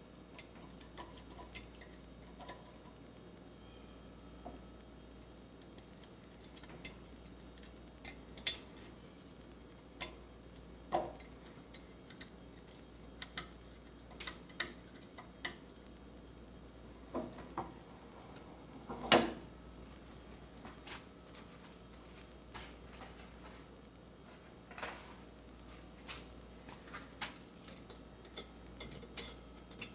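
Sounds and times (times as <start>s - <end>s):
metallic clicks and clinks: 27.6s - 29.9s.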